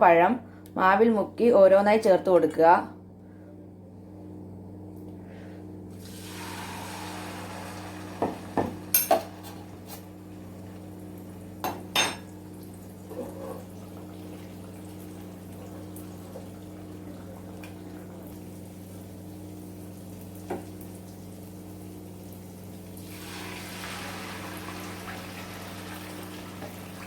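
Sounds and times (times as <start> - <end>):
steady low hum: 0.0 - 23.2
oil sizzling in a pan: 5.9 - 27.0.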